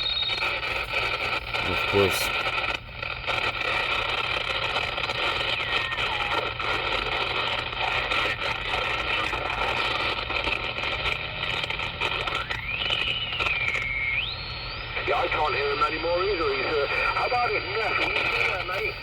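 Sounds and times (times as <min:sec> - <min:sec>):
radio interference splatter: 0:00.0 - 0:19.0
radio static hiss: 0:00.0 - 0:19.0
sliding whistling tone: 0:12.4 - 0:15.3.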